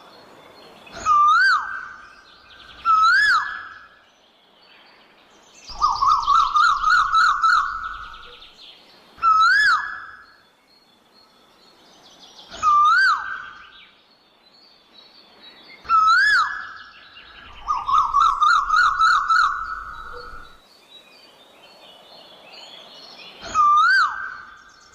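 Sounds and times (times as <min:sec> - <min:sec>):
bird whistled calls: 0:00.9 - 0:04.0, 0:05.7 - 0:08.6, 0:09.2 - 0:10.4, 0:12.5 - 0:13.8, 0:15.8 - 0:20.6, 0:23.4 - 0:24.9.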